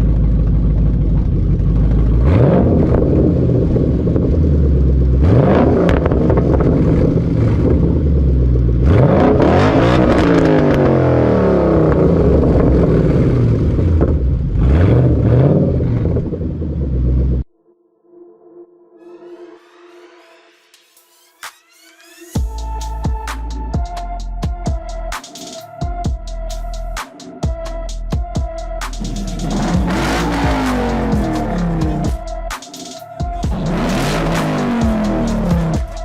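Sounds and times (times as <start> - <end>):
lumpy engine idle: 0.0 - 2.3
car engine revving: 0.0 - 17.5, 28.8 - 32.6, 33.4 - 36.0.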